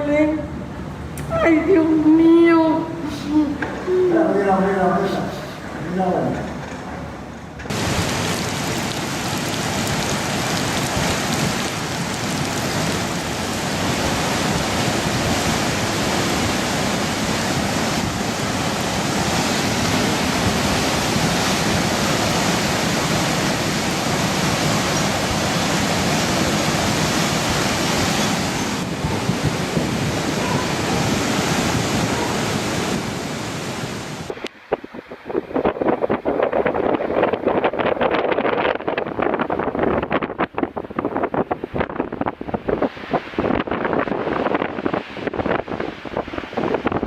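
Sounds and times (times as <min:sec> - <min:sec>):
floodwater rushing: 0:07.7 - 0:38.9.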